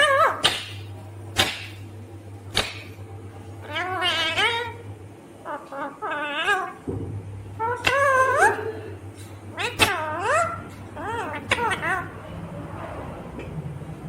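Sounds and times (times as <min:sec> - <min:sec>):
parrot calling: 0:00.0 - 0:01.8, 0:03.6 - 0:04.8, 0:05.4 - 0:06.9, 0:07.5 - 0:12.7
steady low hum: 0:00.0 - 0:14.0.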